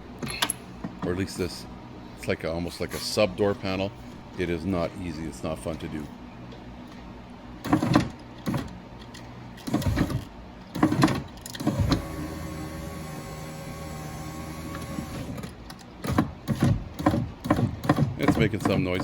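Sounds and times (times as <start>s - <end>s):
power window motor humming: 9.6s - 17.6s.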